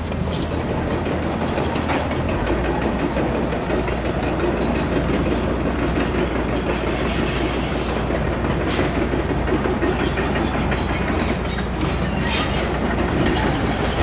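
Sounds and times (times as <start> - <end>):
train wheels clattering: 0.0 - 14.0
high squeal: 12.0 - 14.0.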